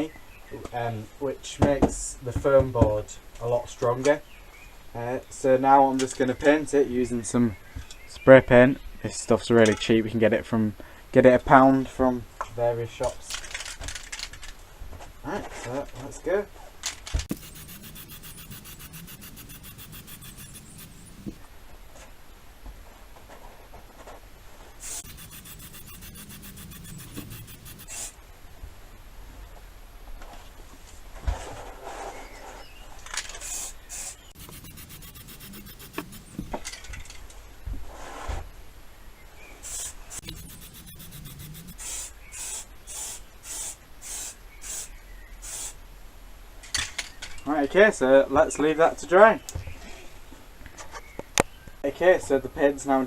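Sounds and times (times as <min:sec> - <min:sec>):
spray can rattling: 0:17.3 - 0:21.3, 0:24.8 - 0:28.1, 0:33.3 - 0:36.8, 0:39.6 - 0:44.8
spray can hissing: 0:17.3 - 0:21.4, 0:24.8 - 0:28.1, 0:33.4 - 0:36.5, 0:39.6 - 0:44.8.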